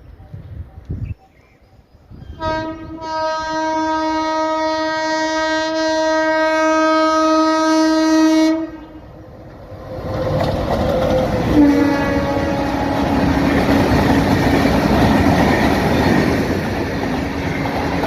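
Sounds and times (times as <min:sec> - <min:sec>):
train rumbling past: 0:02.0 - 0:18.0
low horn-like tone: 0:02.4 - 0:09.1, 0:11.5 - 0:13.2
locomotive horn blast: 0:02.4 - 0:09.2, 0:11.4 - 0:13.5
wheels clacking on rail joints: 0:09.8 - 0:18.0.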